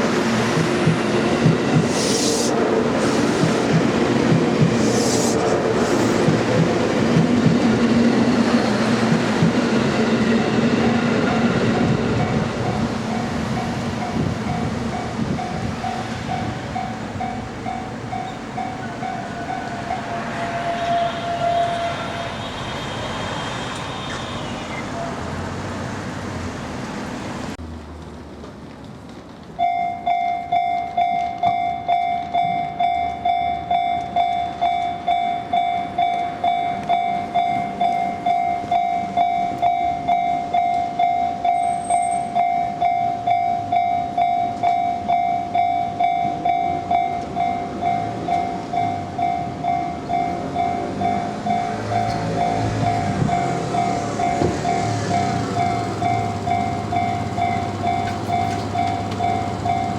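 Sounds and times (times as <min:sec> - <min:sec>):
train wheels rumbling on rails: 0:00.0 - 0:42.9, 0:43.6 - 0:59.9
level crossing warning bell: 0:11.3 - 0:25.4, 0:29.6 - 0:59.9.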